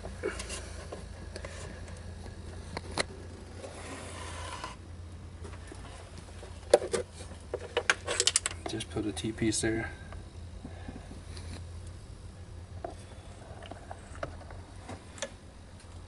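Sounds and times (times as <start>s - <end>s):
steady low hum: 0.0s - 16.0s
brief scrape: 3.7s - 4.8s.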